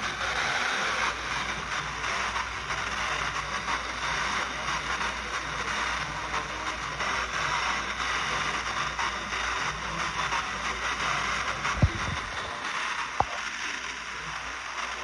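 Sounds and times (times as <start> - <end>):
radio static hiss and crackling: 0.0 - 15.0
low hum: 11.5 - 13.5.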